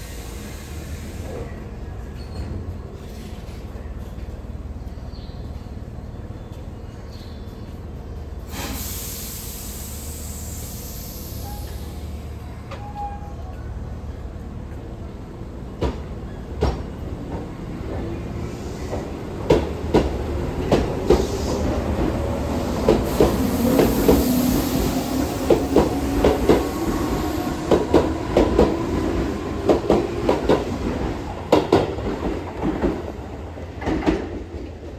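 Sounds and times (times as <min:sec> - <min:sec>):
train wheels clacking over rail joints: 0:15.8 - 0:34.9.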